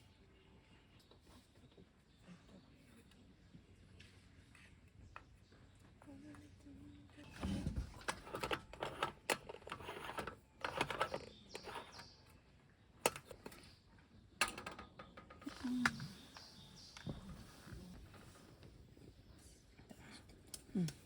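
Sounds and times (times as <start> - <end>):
tableware clicking and rattling: 8.0 - 12.1, 14.4 - 16.0.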